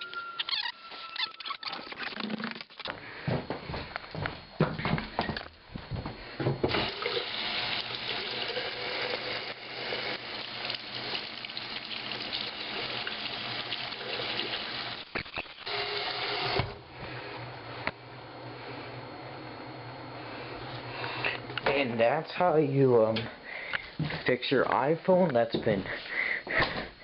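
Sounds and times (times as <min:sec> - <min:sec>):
tap water running into sink: 0:06.7 - 0:15.1.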